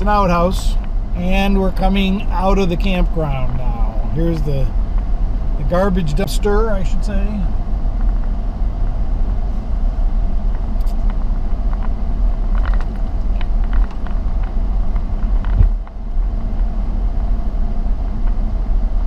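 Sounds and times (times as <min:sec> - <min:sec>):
vehicle engine and tyres rumbling: 0:00.0 - 0:19.0
rattles and knocks: 0:12.5 - 0:15.9.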